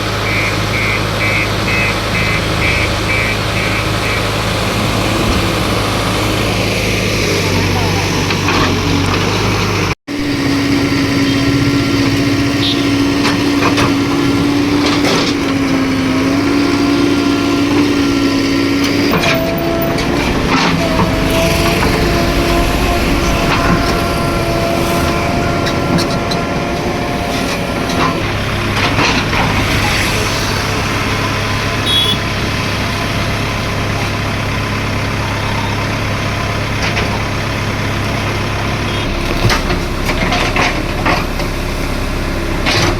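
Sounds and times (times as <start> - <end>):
diesel engine running: 0.0 - 42.9
wavering whine: 18.0 - 32.0.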